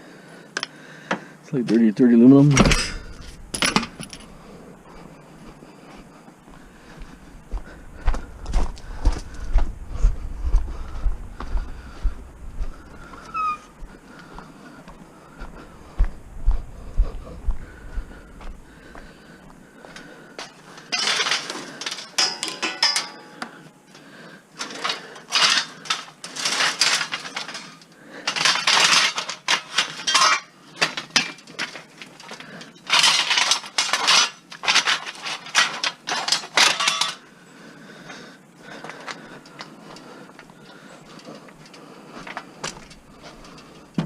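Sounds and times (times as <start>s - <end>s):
scrap metal clattering: 20.4s - 23.4s, 24.6s - 37.2s
metallic ringing: 22.2s - 23.4s.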